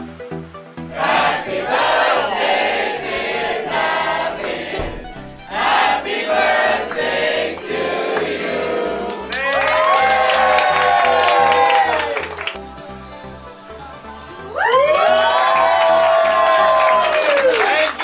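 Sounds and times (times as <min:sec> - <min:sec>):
voices singing: 0:00.8 - 0:09.4.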